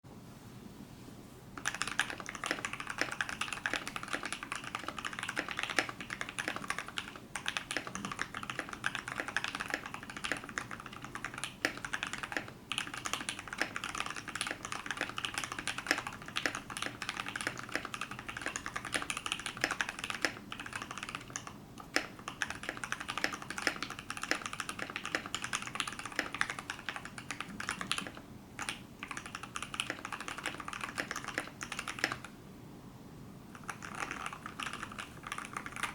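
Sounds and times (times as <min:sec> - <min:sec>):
fast typing on mechanical keyboard: 0:01.6 - 0:32.3, 0:33.6 - 0:35.9.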